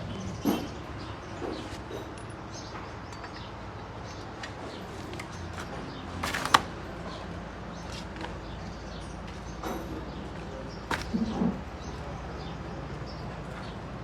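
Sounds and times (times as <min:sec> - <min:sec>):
metal tools clicking and knocking: 0:03.0 - 0:03.5.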